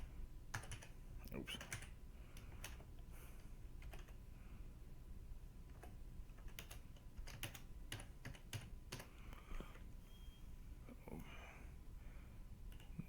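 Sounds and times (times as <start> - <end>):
typing on computer keyboard: 0.5 - 1.0, 1.6 - 2.9, 3.8 - 4.2, 5.7 - 9.1, 12.7 - 13.0.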